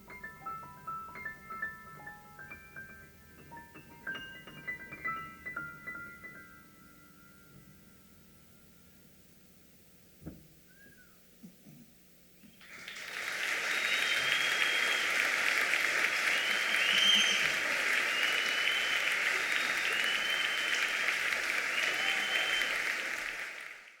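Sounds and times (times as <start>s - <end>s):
whistles from audience: 10.7s - 11.2s, 12.7s - 23.6s
audience applauding: 12.6s - 24.0s.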